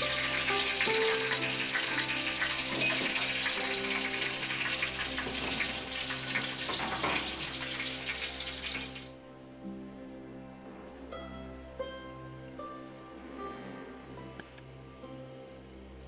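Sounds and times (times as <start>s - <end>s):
duck skin sizzling in pan: 0.0s - 9.2s
soft background music: 0.0s - 16.0s.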